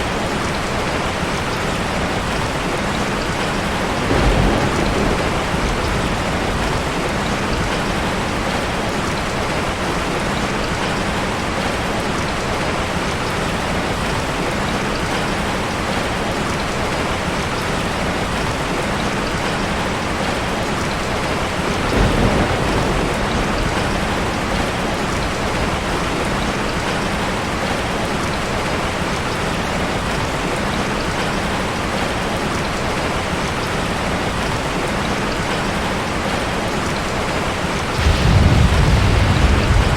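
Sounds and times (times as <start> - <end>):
steady rain falling: 0.0 - 39.9
low rumble: 38.0 - 39.9.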